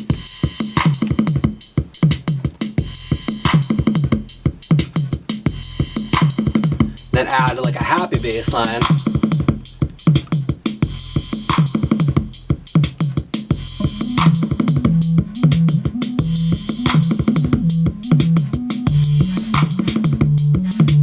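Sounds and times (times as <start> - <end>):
drum machine beat: 0.0 - 21.0
upbeat bass line: 0.0 - 21.0.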